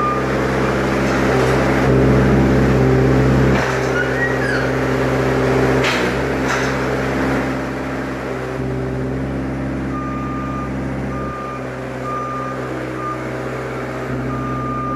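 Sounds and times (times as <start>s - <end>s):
reversing alarm beeping: 0.0s - 2.4s, 3.6s - 5.0s, 9.8s - 14.9s
truck engine running: 0.0s - 14.9s.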